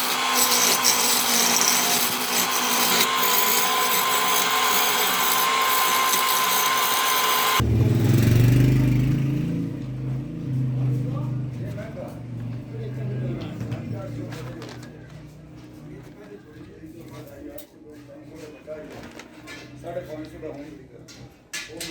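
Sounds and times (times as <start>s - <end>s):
wood lathe cutting: 0.0s - 7.6s.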